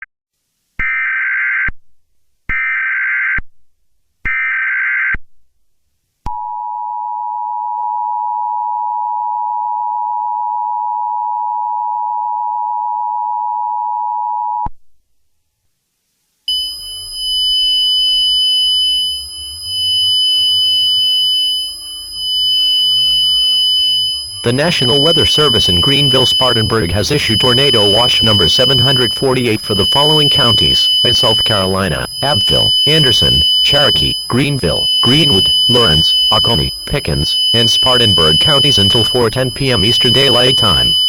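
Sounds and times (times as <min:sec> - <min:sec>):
data tone bursts: 0:22.9 - 0:41.0
two-tone attention signal: 0:24.0 - 0:41.0
steady high tones: 0:24.1 - 0:41.0.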